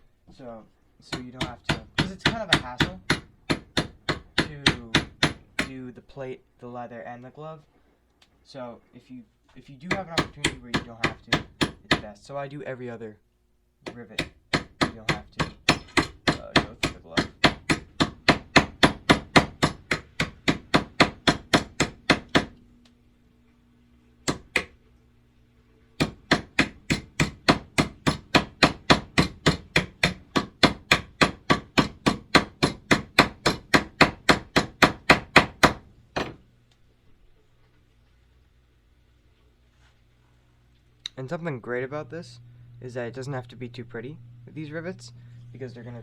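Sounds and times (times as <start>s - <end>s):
hammer striking rivet on metal: 1.4s - 5.7s, 9.9s - 12.0s, 13.9s - 22.5s, 24.3s - 24.8s, 26.0s - 36.4s.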